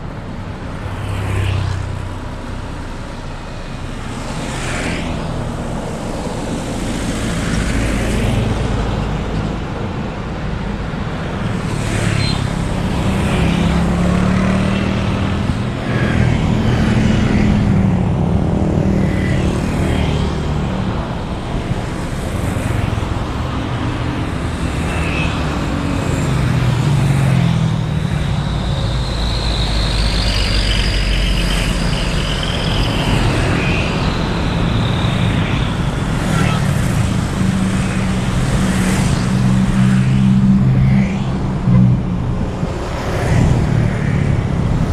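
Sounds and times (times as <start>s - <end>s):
cars and motorbikes passing: 0.0s - 44.9s
high whine: 27.8s - 41.8s.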